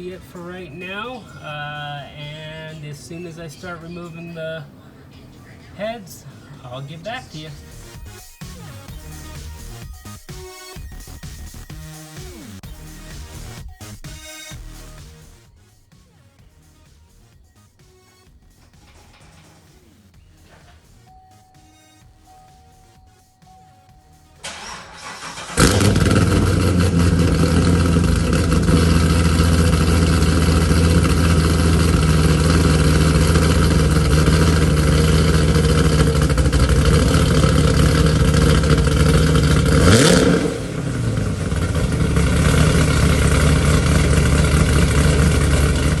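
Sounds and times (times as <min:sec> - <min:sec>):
car engine starting and running: 0:00.0 - 0:04.7, 0:06.7 - 0:15.4, 0:18.2 - 0:46.0
engine rev: 0:24.4 - 0:46.0.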